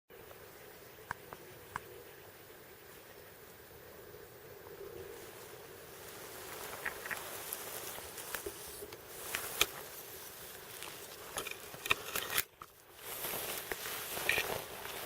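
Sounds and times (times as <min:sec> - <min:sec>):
steady hiss: 0:00.1 - 0:15.0
crackles and clicks: 0:04.6 - 0:15.0
footsteps in dry grass: 0:05.0 - 0:15.0.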